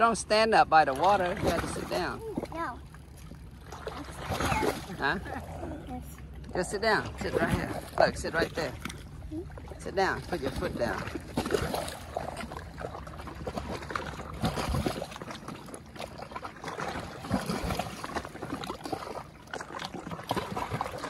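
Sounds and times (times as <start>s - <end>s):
lake water lapping: 0.0s - 21.0s
small splashes and knocks: 0.9s - 5.2s, 6.1s - 21.0s.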